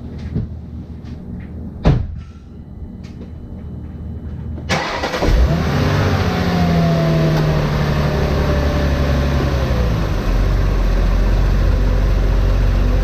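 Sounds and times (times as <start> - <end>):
thump: 1.8 - 2.2
car engine starting and idling: 4.7 - 13.0.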